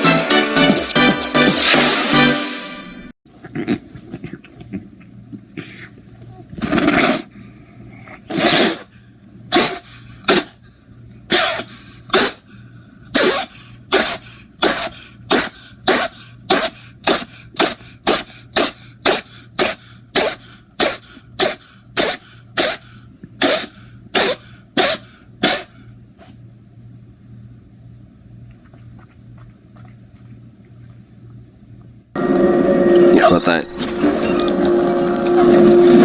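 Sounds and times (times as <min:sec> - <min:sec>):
cat sneezing: 0:06.6 - 0:07.3, 0:08.3 - 0:08.9, 0:09.5 - 0:10.6, 0:11.3 - 0:12.5, 0:13.1 - 0:26.4
man sneezing: 0:09.5 - 0:10.6, 0:11.3 - 0:12.4, 0:13.2 - 0:25.7.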